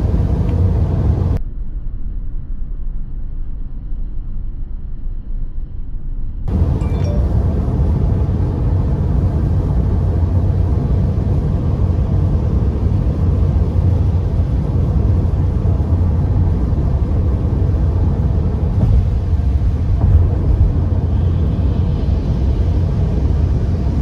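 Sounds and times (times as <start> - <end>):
car driving in heavy rain: 0.0 - 1.4, 6.5 - 24.0.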